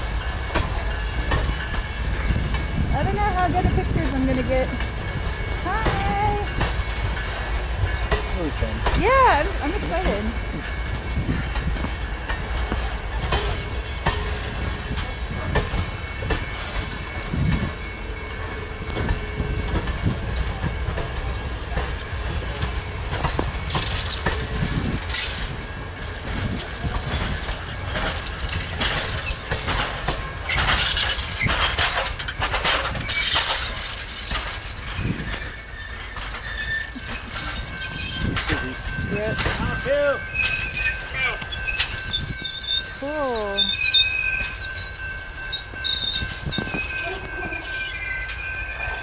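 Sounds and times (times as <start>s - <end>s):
train cars rumbling past: 0.0s - 49.0s
wheels clicking over rail joints: 0.0s - 49.0s
high-pitched wheel squeal: 21.7s - 49.0s.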